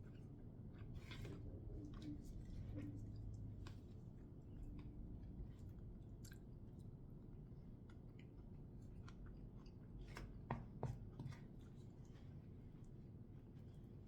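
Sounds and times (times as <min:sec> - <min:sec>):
person chewing food: 0:07.7 - 0:10.5.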